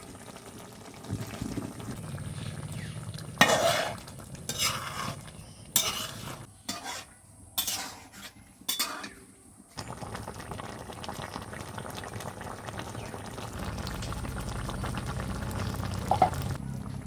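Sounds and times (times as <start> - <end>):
curry bubbling: 0.0 - 6.5, 9.8 - 17.0
metal spoon scraping a pot: 3.4 - 9.3.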